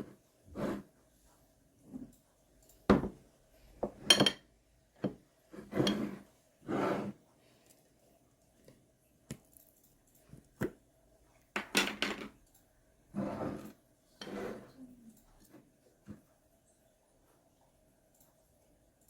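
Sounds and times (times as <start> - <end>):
dishes and utensils clattering: 3.8 - 4.5.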